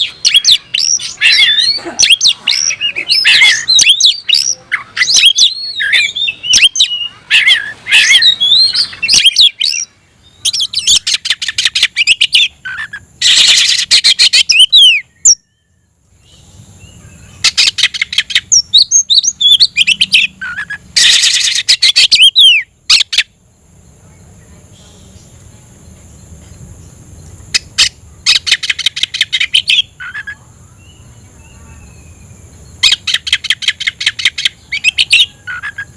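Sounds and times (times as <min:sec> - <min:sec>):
songbird singing: 0:00.0 - 0:35.9.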